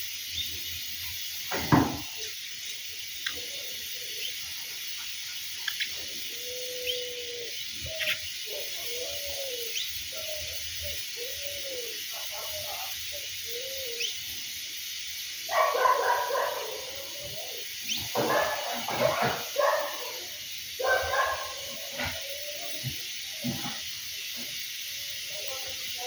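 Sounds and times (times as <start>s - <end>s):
faint high bird chirps: 0.3s - 14.4s, 15.5s - 23.4s
dove cooing: 3.2s - 4.5s, 5.1s - 14.2s, 15.5s - 26.0s
rough barking call: 11.2s - 14.2s, 15.4s - 23.8s.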